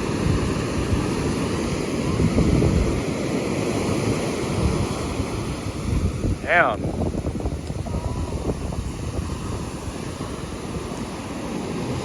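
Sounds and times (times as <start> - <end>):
ocean surf breaking: 0.0 - 12.0
wind buffeting microphone: 0.0 - 12.0.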